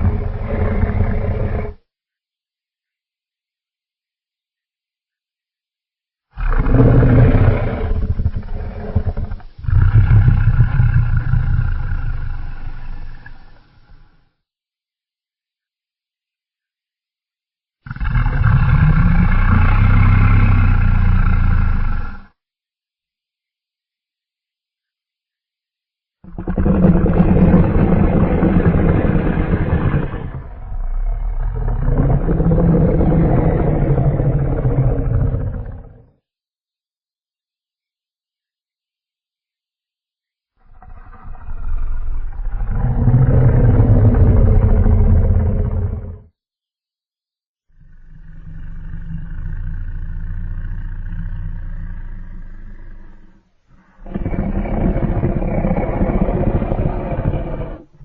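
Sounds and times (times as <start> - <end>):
deep monster roar: 0.0 - 1.8, 6.3 - 13.5, 17.8 - 22.4, 26.2 - 36.2, 40.6 - 46.3, 47.8 - 57.9.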